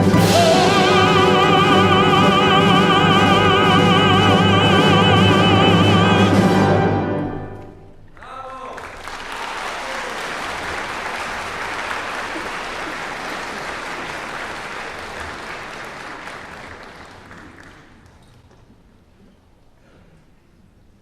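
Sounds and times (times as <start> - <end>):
audience applauding: 8.1 - 18.7.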